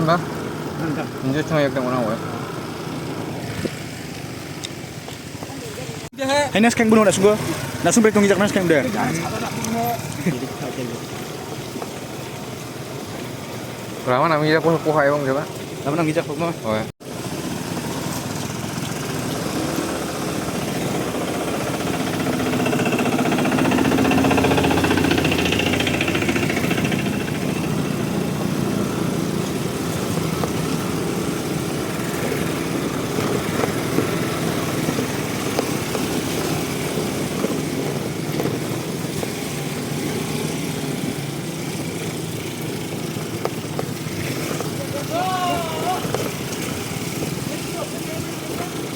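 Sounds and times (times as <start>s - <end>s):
scooter engine running: 0.0s - 48.9s.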